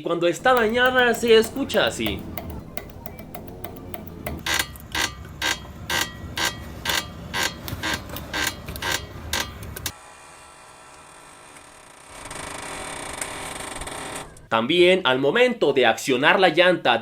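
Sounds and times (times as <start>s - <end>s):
suspension ball joint clicking: 0.4s - 4.7s.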